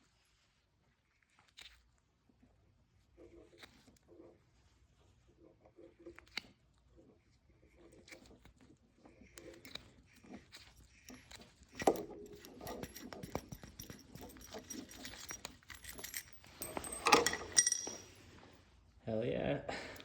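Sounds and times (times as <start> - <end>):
chain tool clicking and creaking: 9.5 - 18.2
bicycle chain rattling: 11.8 - 18.2
metal clacks: 11.8 - 18.2.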